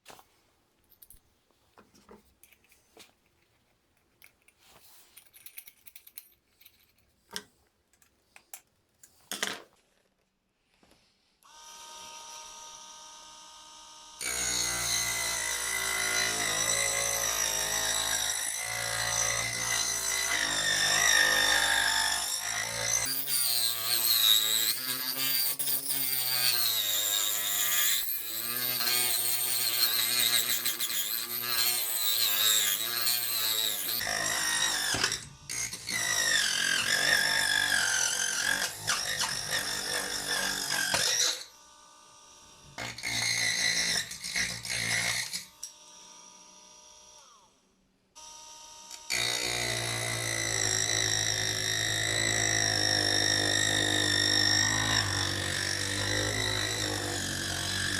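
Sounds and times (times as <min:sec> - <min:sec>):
mini drill motor whining: 0:11.5 - 0:47.6.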